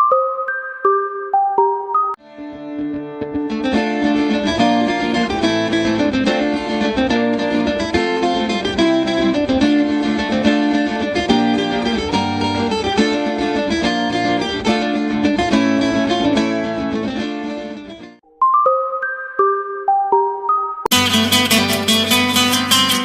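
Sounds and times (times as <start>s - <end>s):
plucked string ringtone melody: 18.2s - 23.0s.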